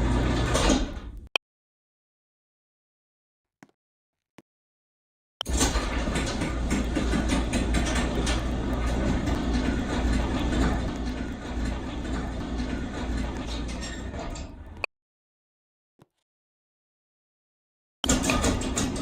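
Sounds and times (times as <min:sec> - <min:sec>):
door rattling along rail: 0:00.0 - 0:01.2, 0:05.4 - 0:14.9, 0:18.0 - 0:19.0
garage door opener humming: 0:00.0 - 0:01.3, 0:05.4 - 0:14.9, 0:18.0 - 0:19.0.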